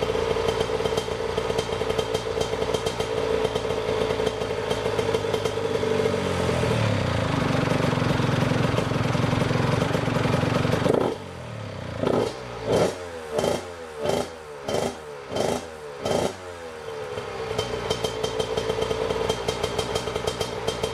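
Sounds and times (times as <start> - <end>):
crackly engine idle: 0.0 - 12.0, 16.8 - 20.9
dirt bike engine revving: 10.8 - 11.4, 12.0 - 16.5.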